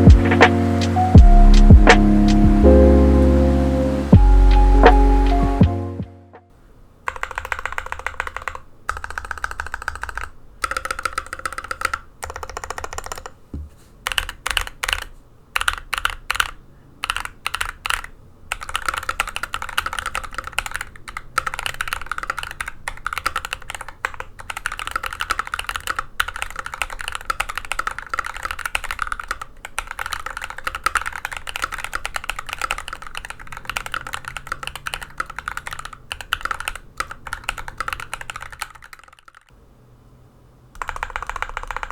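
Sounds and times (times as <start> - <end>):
mechanical keyboard typing: 7.1 - 13.4, 14.0 - 39.6, 40.8 - 41.9.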